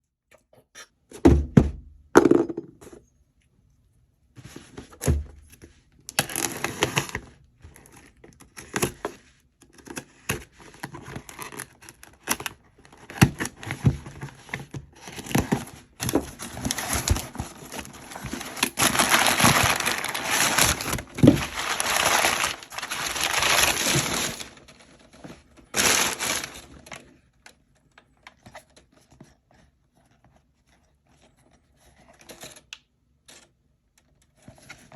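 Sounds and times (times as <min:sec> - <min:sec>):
packaging rustling and tearing: 0:06.1 - 0:09.0, 0:10.6 - 0:27.1.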